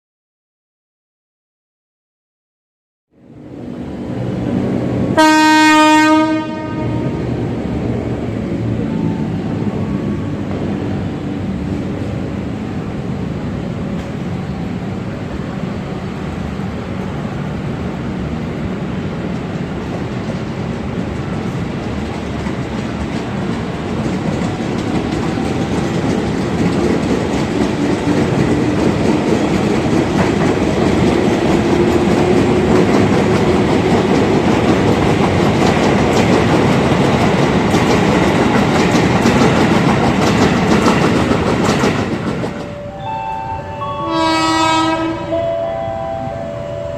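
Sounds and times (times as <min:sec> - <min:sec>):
train wheels clattering on rails: 0:13.6 - 0:42.8.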